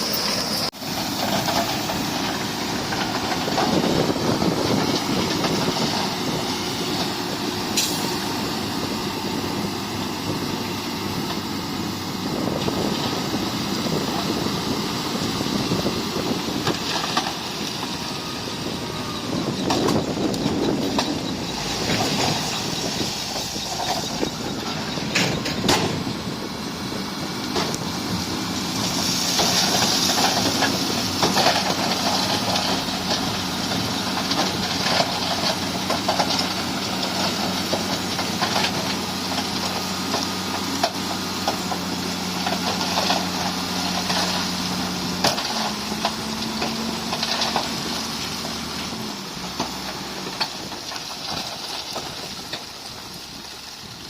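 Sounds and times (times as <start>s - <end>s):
diesel engine running: 0.0s - 54.0s
machine clanks and knocks: 23.5s - 26.1s.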